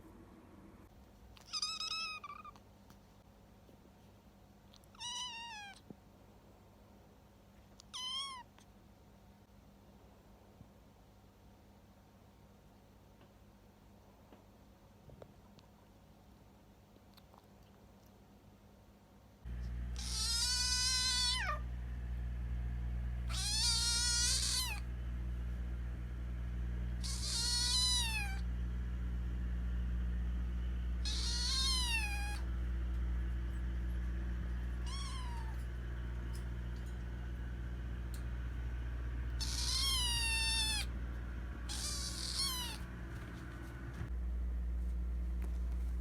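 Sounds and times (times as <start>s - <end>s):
kitten meowing: 1.4s - 2.6s, 4.9s - 5.8s, 7.8s - 8.5s, 20.0s - 21.6s, 23.3s - 24.8s, 27.0s - 28.4s, 31.0s - 32.5s, 34.8s - 35.6s, 39.3s - 40.9s, 41.7s - 42.9s
low hum: 19.5s - 46.0s.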